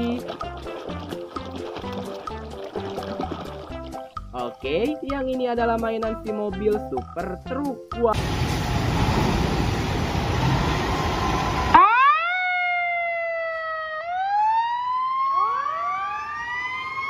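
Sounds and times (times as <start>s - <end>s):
toy siren wailing: 15.2s - 17.0s.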